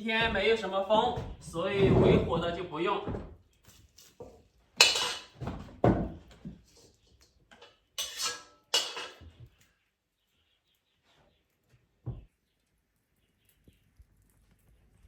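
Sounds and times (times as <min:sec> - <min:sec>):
metal cookware clanking: 0:04.8 - 0:05.4, 0:07.5 - 0:09.4.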